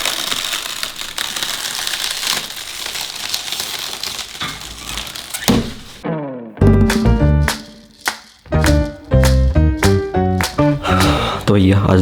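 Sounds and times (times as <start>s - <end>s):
crinkling and crackling: 0.0s - 6.0s.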